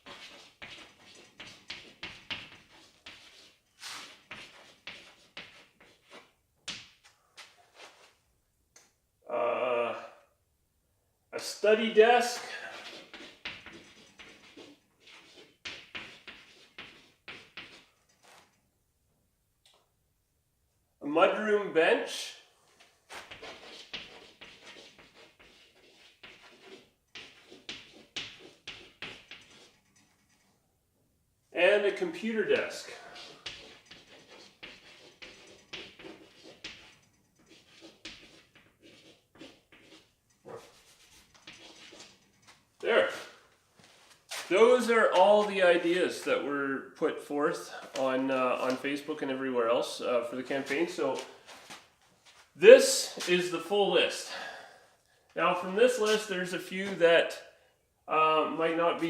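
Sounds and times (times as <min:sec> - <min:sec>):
pen scratching on paper: 0:00.0 - 0:06.3, 0:12.6 - 0:18.5, 0:23.2 - 0:30.4, 0:32.5 - 0:42.6.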